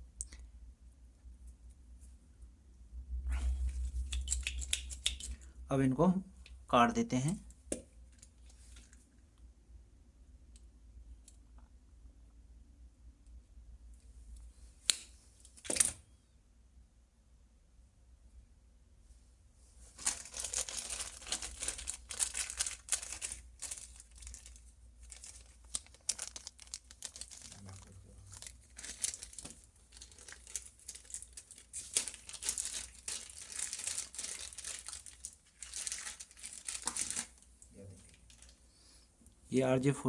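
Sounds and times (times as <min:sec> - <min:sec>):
rustling and crinkling of wires: 0:07.4 - 0:09.3, 0:19.7 - 0:39.4.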